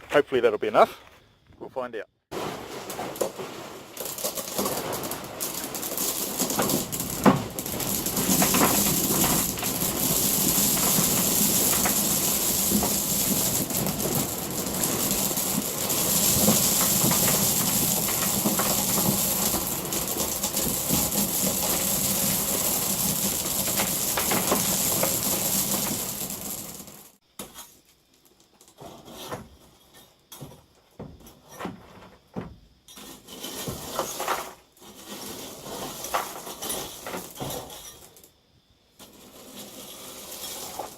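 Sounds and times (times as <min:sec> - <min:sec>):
gravel pouring into container: 0:02.3 - 0:27.2, 0:39.2 - 0:40.9.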